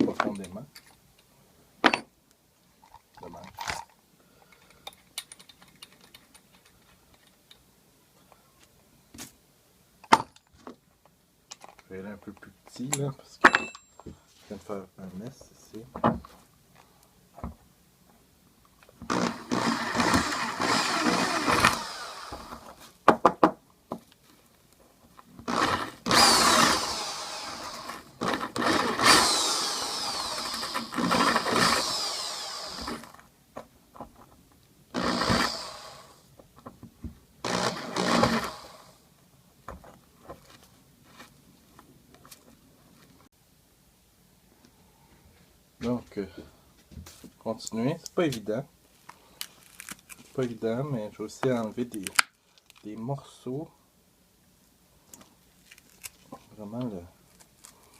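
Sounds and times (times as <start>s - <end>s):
electric drill boring into wood: 19.0s - 22.7s, 25.5s - 33.2s, 34.9s - 36.3s, 37.4s - 39.0s.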